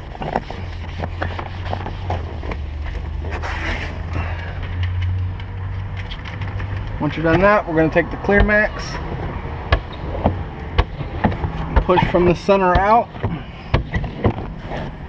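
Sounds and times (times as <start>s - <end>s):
pad scrubbing wet glass: 0.0s - 3.9s.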